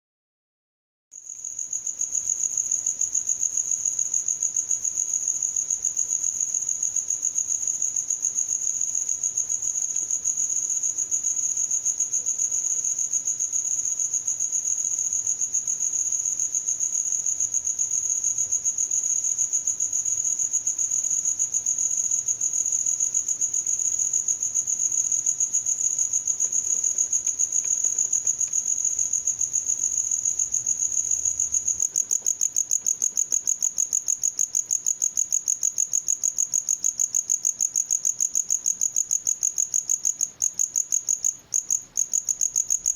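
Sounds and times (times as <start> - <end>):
cricket chirping: 1.2 - 42.9.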